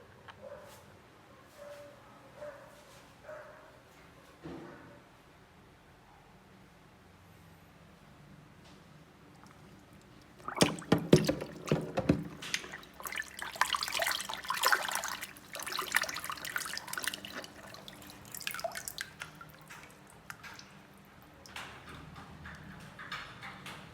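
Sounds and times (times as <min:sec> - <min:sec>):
water splashing and dripping: 0:09.3 - 0:23.1.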